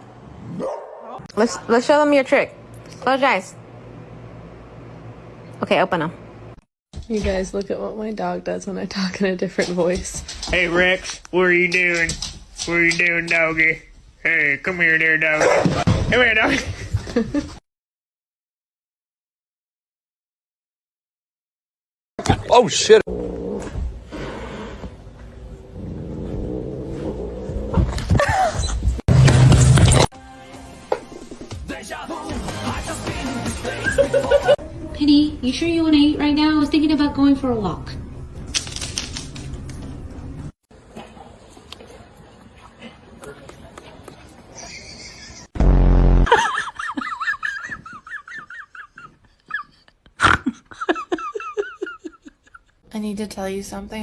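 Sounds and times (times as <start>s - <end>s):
loud low buzzing: 45.6s - 46.4s.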